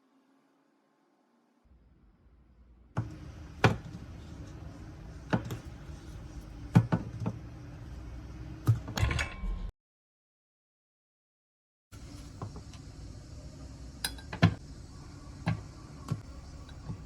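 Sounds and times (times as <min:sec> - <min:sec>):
steady low hum: 0:01.6 - 0:09.0, 0:12.0 - 0:17.0.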